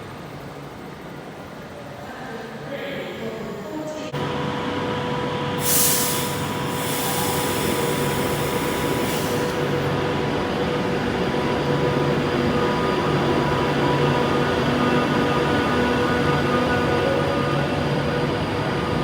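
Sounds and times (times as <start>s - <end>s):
train humming and whining: 0.0s - 19.0s
loud hiss: 5.6s - 9.9s.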